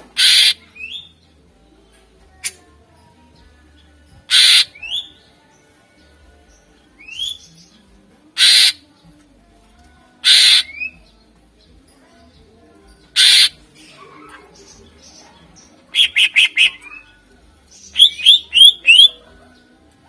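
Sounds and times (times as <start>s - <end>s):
bird harsh rasping calls: 0.0s - 1.1s, 4.3s - 5.2s, 8.4s - 8.8s, 10.2s - 11.0s, 13.1s - 19.2s.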